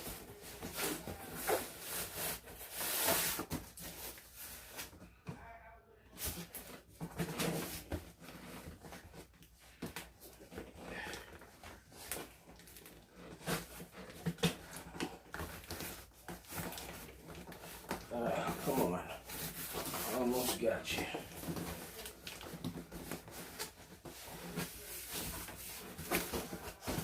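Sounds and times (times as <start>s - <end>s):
cardboard box rubbing and scraping: 0.0s - 4.9s, 6.2s - 9.4s, 10.2s - 27.0s.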